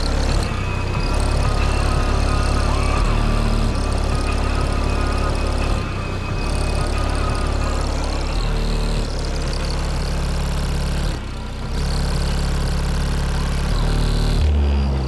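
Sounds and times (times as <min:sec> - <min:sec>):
bass-heavy music through subwoofers: 0:00.0 - 0:15.0.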